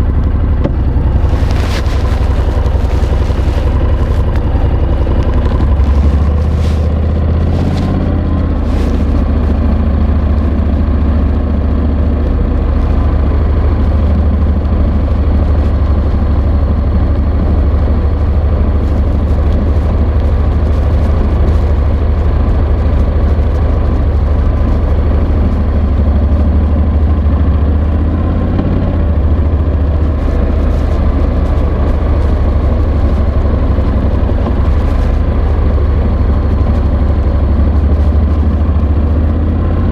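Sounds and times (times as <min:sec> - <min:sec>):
motorcycle engine running: 0:00.0 - 0:39.9
microphone rubbing on fabric: 0:00.7 - 0:10.8, 0:18.2 - 0:26.9, 0:29.1 - 0:38.6.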